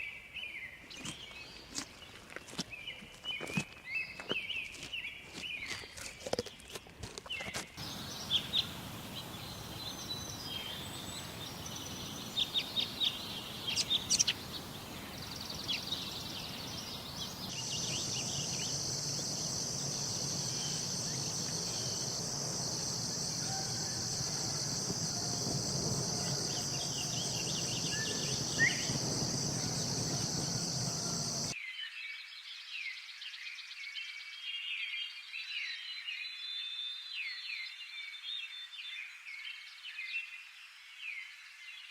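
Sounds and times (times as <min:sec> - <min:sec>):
birds chirping: 0:07.3 - 0:31.6
high insect drone: 0:07.8 - 0:31.6
steady outdoor hiss: 0:07.8 - 0:31.6.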